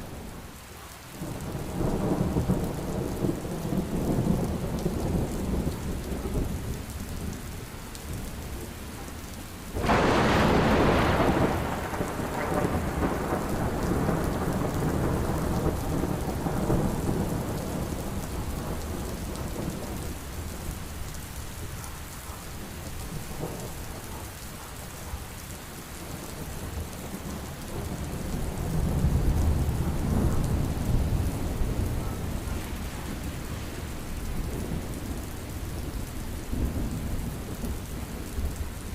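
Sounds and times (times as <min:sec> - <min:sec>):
heavy rain falling: 0:00.0 - 0:38.9
loud thunderclap: 0:09.8 - 0:19.9
rolling thunder: 0:09.8 - 0:20.7, 0:26.4 - 0:38.7.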